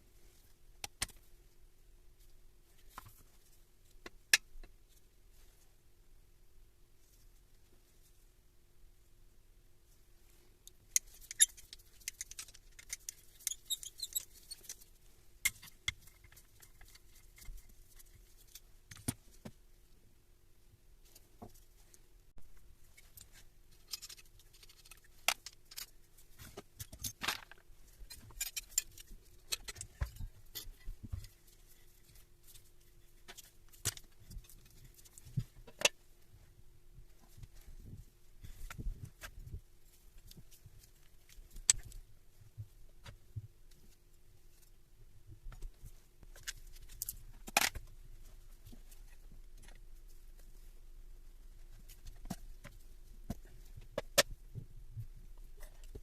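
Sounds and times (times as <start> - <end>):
faint steady hum: 0.0 - 56.0
metal parts and tools clinking: 26.8 - 30.9.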